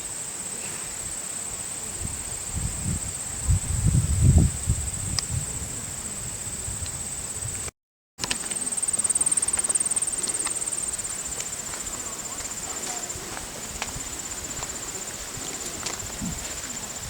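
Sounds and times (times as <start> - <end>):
insects trilling: 0.0 - 17.0
low rumbling on microphone: 2.0 - 7.7.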